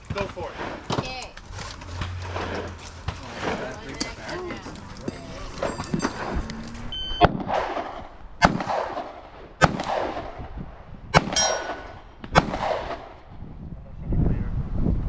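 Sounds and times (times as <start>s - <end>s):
short beep: 6.5s - 7.3s
handgun shots echoing: 7.2s - 10.3s, 11.2s - 13.2s
steel target ringing ping: 11.2s - 12.1s.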